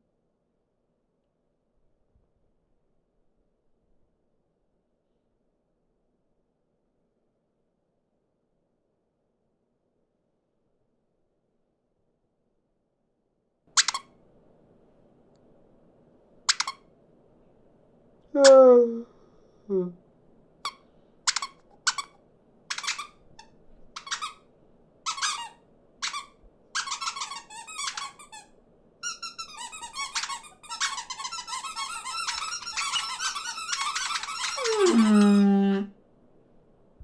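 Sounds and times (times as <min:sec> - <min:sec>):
cartoon birds chirping: 0:34.5 - 0:35.7.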